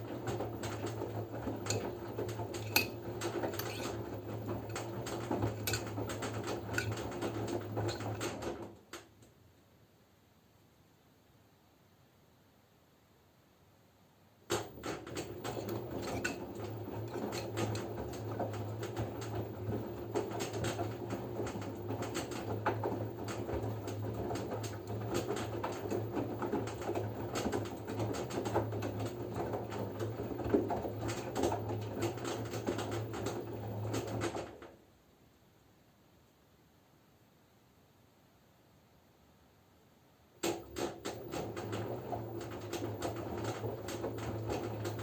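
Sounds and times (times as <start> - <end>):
laundry tumbling knocks: 0.0 - 8.8, 14.5 - 34.5, 40.4 - 45.0
washing machine motor hum: 0.0 - 9.0, 14.4 - 34.6, 40.4 - 45.0.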